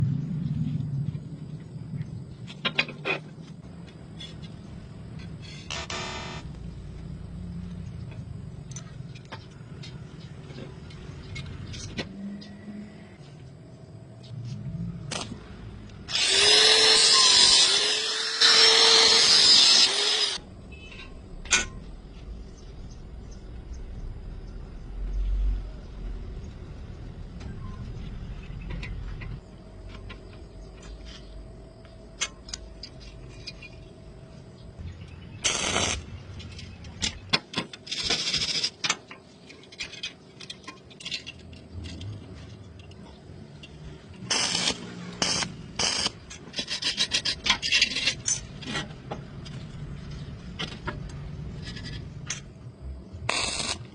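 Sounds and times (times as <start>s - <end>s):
power tool motor running: 16.1s - 20.4s.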